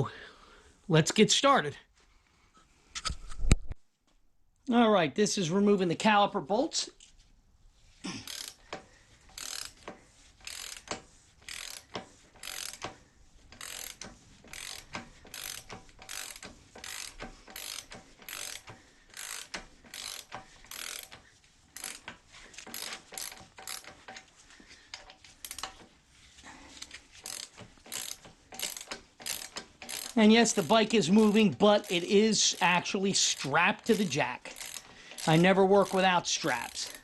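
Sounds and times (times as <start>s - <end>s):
socket ratchet clicking: 8.2s - 13.0s, 13.6s - 21.2s, 21.8s - 24.2s, 25.0s - 25.8s, 27.2s - 37.0s.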